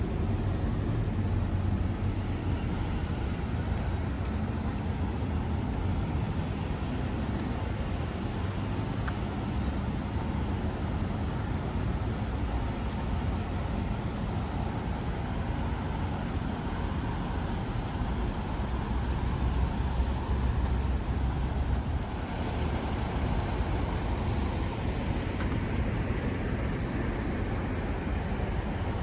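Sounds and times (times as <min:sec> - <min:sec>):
vehicles passing: 0:00.0 - 0:28.8.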